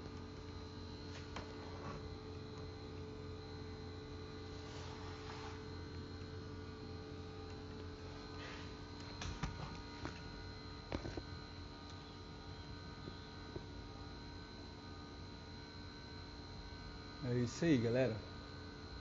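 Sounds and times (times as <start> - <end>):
steady electrical hum: 0.0 - 19.0
soft rustles: 4.5 - 5.7.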